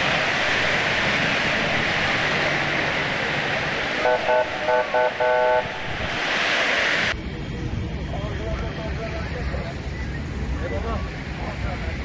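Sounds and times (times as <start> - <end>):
rushing street noise: 0.0 - 12.0
car horn honking: 4.0 - 5.9.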